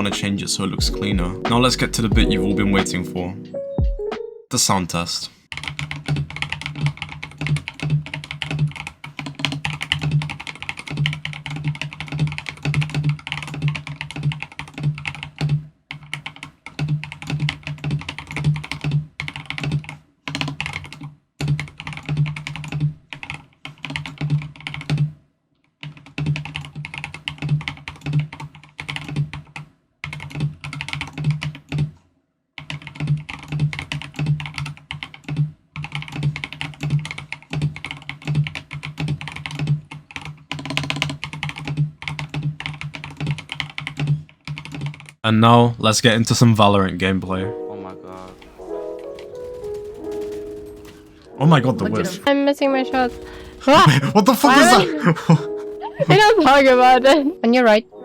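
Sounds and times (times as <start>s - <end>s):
mechanical keyboard typing: 5.5s - 25.1s, 25.8s - 31.9s, 32.6s - 45.2s, 48.1s - 51.6s.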